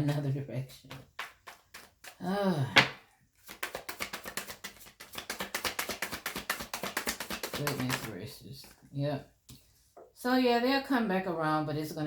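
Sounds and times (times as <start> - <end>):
cards being shuffled: 0.0 - 2.2, 3.4 - 8.8.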